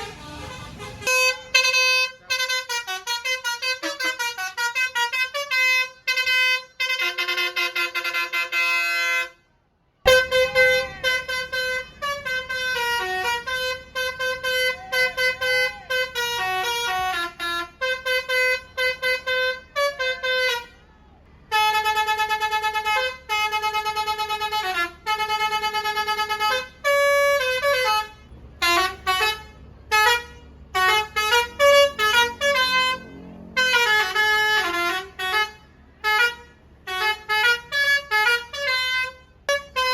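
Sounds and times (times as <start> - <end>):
bus horn playing tunes: 0.0 - 9.5, 10.1 - 39.9
low steady rumble: 9.4 - 39.9.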